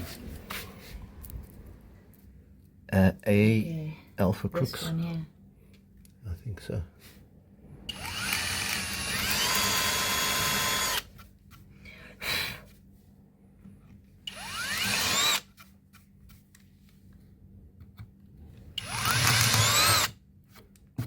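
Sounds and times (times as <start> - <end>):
electric drill boring into wood: 7.9 - 11.1, 14.3 - 15.5, 18.8 - 20.2.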